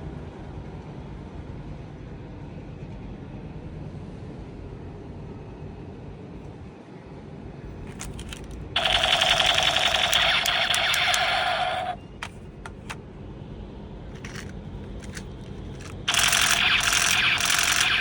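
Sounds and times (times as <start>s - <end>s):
toy blaster clicks: 7.9s - 13.0s, 14.2s - 18.0s
toy blaster rapid burst: 7.9s - 13.0s, 14.2s - 18.0s.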